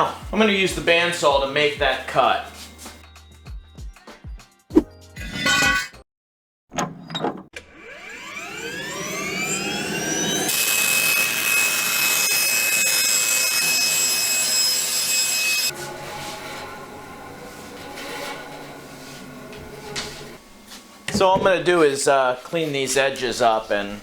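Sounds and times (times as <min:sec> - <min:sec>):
bandsaw motor whining: 0:07.6 - 0:19.9
bandsaw blade cutting wood: 0:08.0 - 0:16.9.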